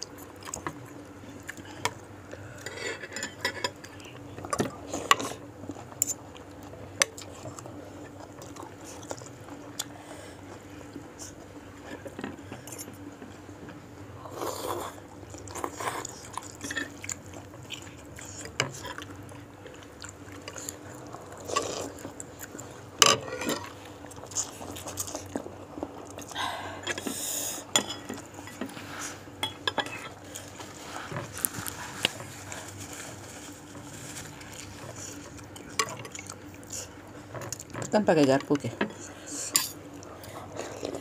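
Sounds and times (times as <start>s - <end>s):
person chewing: 14.3s - 27.0s, 29.9s - 37.8s.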